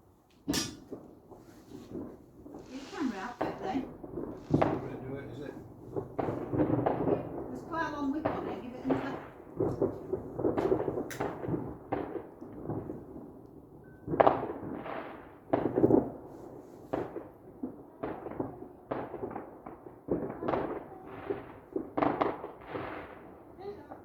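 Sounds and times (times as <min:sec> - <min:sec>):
fireworks bangs: 0:00.5 - 0:13.4, 0:14.0 - 0:24.0.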